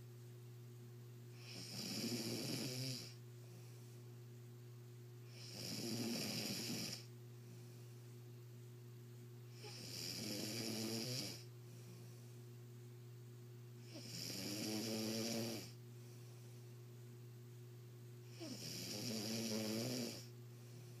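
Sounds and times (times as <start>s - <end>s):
steady low hum: 0.0s - 21.0s
man snoring: 1.4s - 3.2s, 5.3s - 7.1s, 9.5s - 11.5s, 13.8s - 15.8s, 18.3s - 20.3s.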